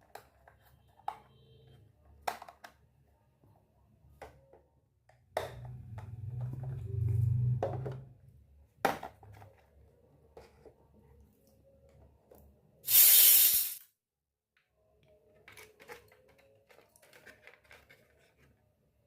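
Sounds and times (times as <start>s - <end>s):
toy kitchen pieces handled: 12.9s - 13.8s, 15.0s - 19.0s.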